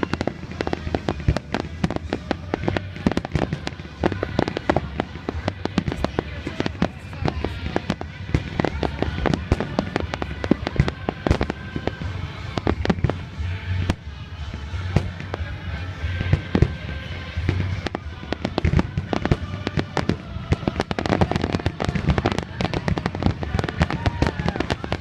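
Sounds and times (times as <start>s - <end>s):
fireworks bangs and crackles: 0.0s - 25.0s.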